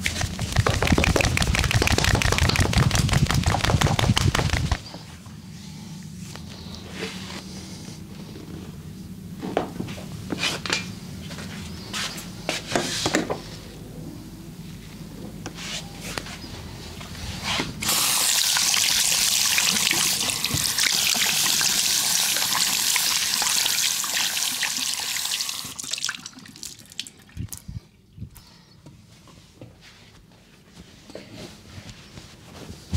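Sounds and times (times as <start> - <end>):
rubbing and handling noises: 0.0 - 8.9, 28.4 - 32.9.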